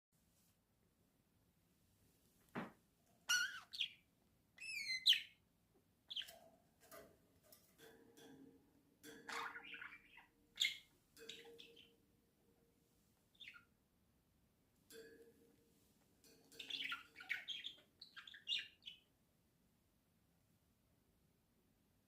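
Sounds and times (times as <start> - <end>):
budgerigars chirping: 3.3 - 4.0, 4.6 - 5.4, 6.1 - 6.4, 9.3 - 11.9, 16.6 - 19.0.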